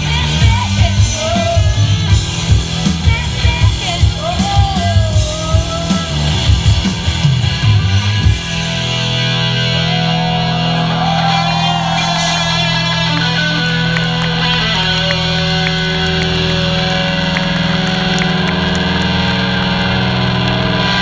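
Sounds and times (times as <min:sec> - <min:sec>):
electric guitars sustained notes: 0:00.0 - 0:21.0
steady low drone: 0:07.0 - 0:21.0.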